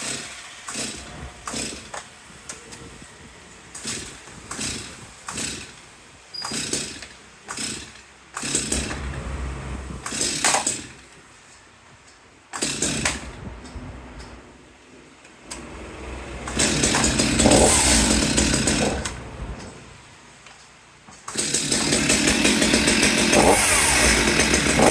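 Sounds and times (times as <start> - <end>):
chainsaw engine running: 8.4 - 10.8, 15.5 - 20.0, 21.5 - 24.9
starter cord pulls: 8.4 - 10.8, 15.5 - 19.9.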